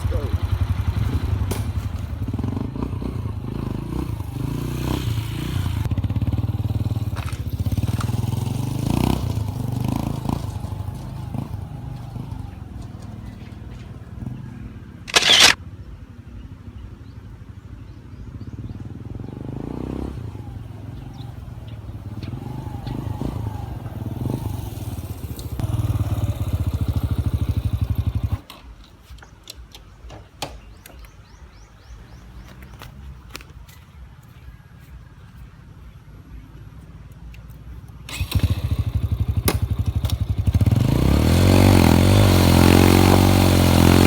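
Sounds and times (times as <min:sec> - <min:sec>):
motorcycle engine revving: 0:00.0 - 0:15.6, 0:17.0 - 0:28.8, 0:38.0 - 0:44.0
scattered clicks: 0:15.1 - 0:15.6.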